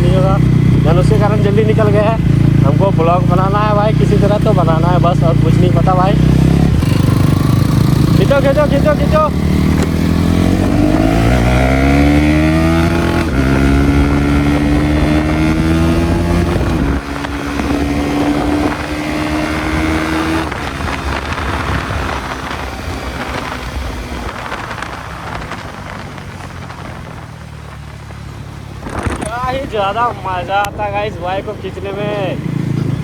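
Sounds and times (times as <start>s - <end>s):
motorcycle engine accelerating: 0.0s - 33.0s
wind noise on microphone: 4.2s - 29.9s.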